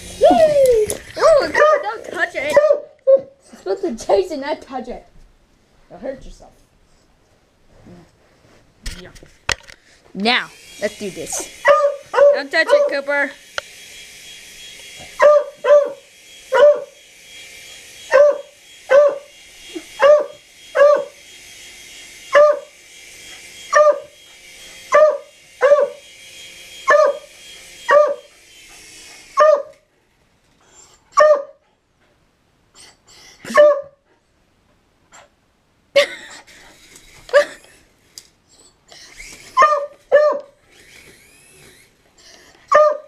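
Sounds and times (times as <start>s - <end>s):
toy helicopter motor whine: 0.0s - 2.5s, 10.2s - 29.9s, 36.4s - 43.0s
dog barking: 1.5s - 3.3s, 11.6s - 12.9s, 15.2s - 17.0s, 18.1s - 19.3s, 20.0s - 21.2s, 22.3s - 22.7s, 23.7s - 24.1s, 24.9s - 26.0s, 26.9s - 27.3s, 27.9s - 28.3s, 29.4s - 29.8s, 31.2s - 31.6s, 33.5s - 34.0s, 39.6s - 40.6s, 42.7s - 43.0s.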